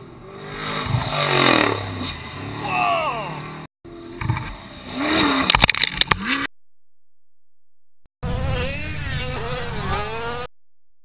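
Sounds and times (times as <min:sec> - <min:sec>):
high-revving engine buzzing: 0:00.0 - 0:06.5, 0:08.2 - 0:10.5.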